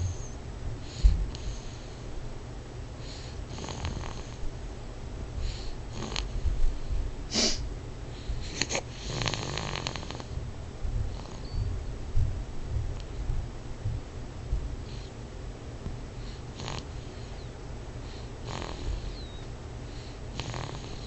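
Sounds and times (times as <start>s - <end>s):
loud snoring: 3.5s - 4.4s, 9.0s - 10.2s, 16.6s - 16.9s, 18.4s - 19.3s, 20.3s - 21.0s.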